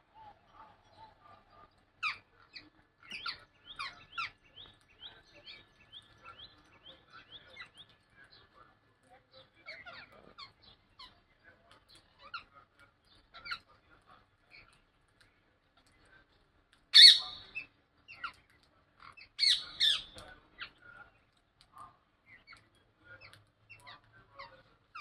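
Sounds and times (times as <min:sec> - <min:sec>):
loud parrot calls: 0:17.0 - 0:17.5, 0:19.4 - 0:20.2
parrots chirping: 0:17.0 - 0:18.4, 0:19.1 - 0:20.8.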